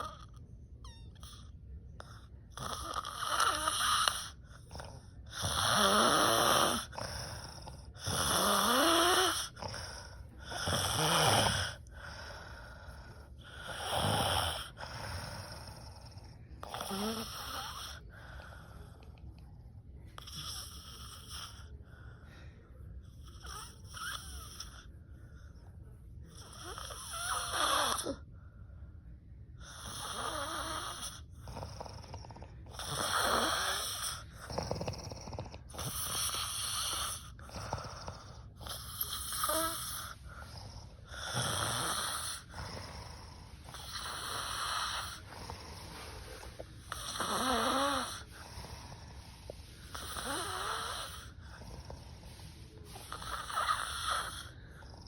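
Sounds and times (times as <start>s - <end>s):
woman snoring loudly: 2.6s - 18.0s, 26.6s - 28.2s, 29.7s - 55.0s.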